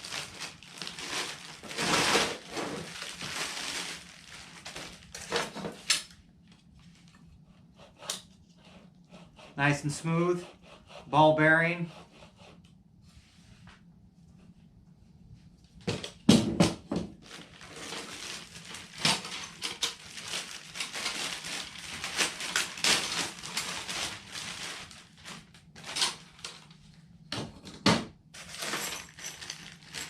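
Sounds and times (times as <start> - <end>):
packaging rustling: 0.0 - 5.9, 17.2 - 26.6, 28.4 - 30.0
metal and plastic parts clattering: 0.8 - 3.8, 4.6 - 6.2, 17.4 - 24.1, 25.3 - 26.6, 27.3 - 30.0.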